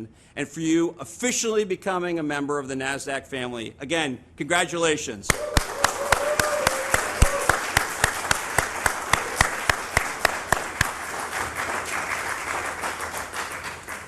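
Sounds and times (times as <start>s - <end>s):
audience applauding: 5.3s - 14.0s
loud individual claps: 5.3s - 14.0s.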